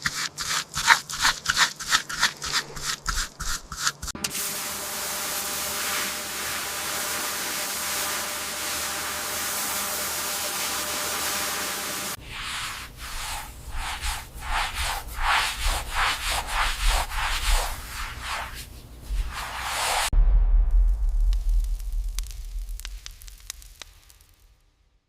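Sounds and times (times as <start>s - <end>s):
sanding strokes on hard surface: 0.0s - 4.2s, 5.0s - 20.1s
steady hiss: 4.6s - 20.1s, 21.3s - 24.6s
loud low rumble: 20.1s - 23.4s.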